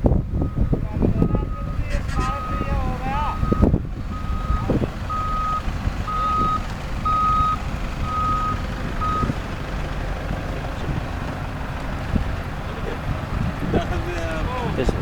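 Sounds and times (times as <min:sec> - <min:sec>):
low engine rumble: 0:00.0 - 0:15.0
reversing alarm beeping: 0:00.4 - 0:09.4.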